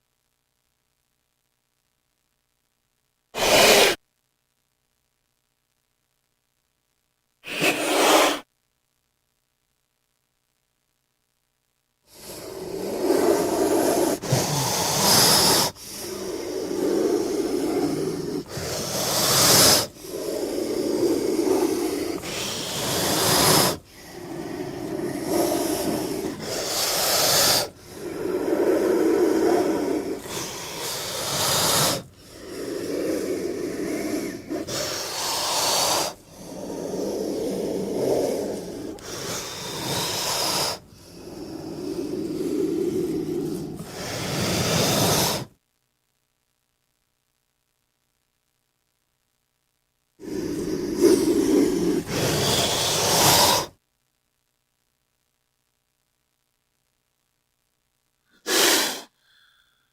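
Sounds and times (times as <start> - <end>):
snake hissing: 3.4 - 4.0, 7.4 - 8.4, 12.1 - 45.5, 50.2 - 53.8, 58.4 - 59.7.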